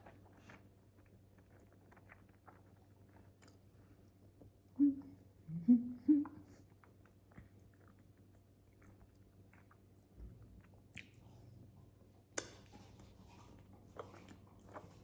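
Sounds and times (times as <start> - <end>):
person chewing: 0.0 - 3.8, 12.3 - 15.0.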